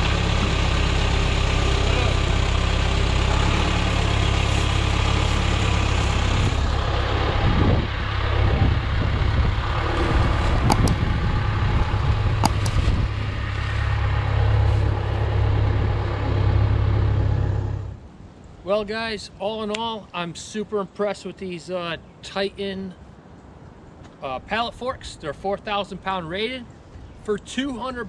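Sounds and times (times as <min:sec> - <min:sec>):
diesel engine droning: 0:00.0 - 0:18.1
short sharp clicks: 0:12.4 - 0:12.9.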